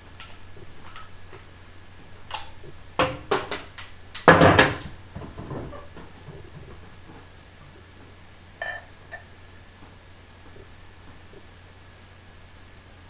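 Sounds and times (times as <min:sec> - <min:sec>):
glass bottle clinking: 0:03.0 - 0:05.9
bottle clattering: 0:03.0 - 0:07.3.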